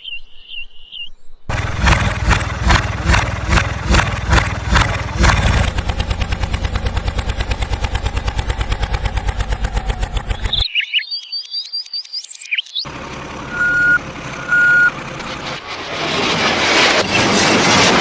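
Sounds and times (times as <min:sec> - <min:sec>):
vehicle engine chugging and idling: 0:01.5 - 0:10.7, 0:12.9 - 0:15.6.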